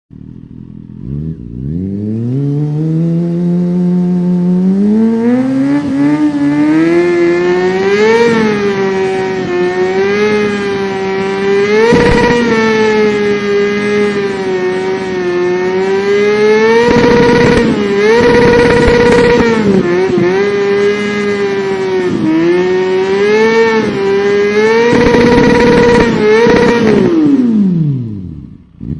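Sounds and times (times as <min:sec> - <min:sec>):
buzzy motor hum: 0:11.9 - 0:12.6, 0:16.9 - 0:20.0, 0:24.9 - 0:27.1.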